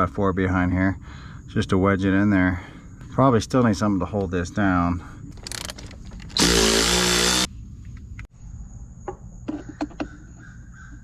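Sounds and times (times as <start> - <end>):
cordless power tool running: 6.3 - 7.5.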